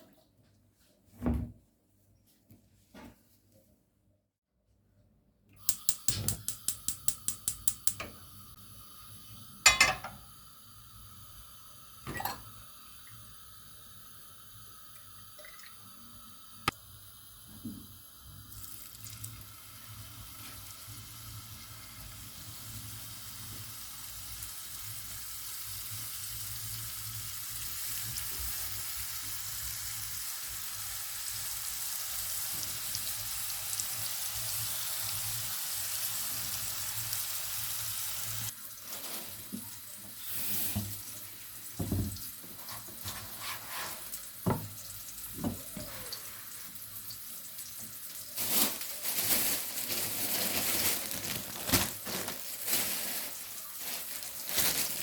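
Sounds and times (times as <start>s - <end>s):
gas stove igniter clicking: 5.6s - 8.3s
food sizzling in a pan: 5.6s - 55.0s
pans and utensils knocking: 9.7s - 10.2s, 12.1s - 12.5s.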